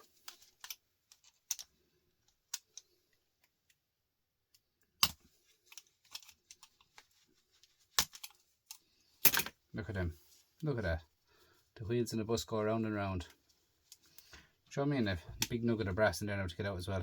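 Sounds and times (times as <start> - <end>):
clicks and snaps of tools and parts: 0.2 - 3.8.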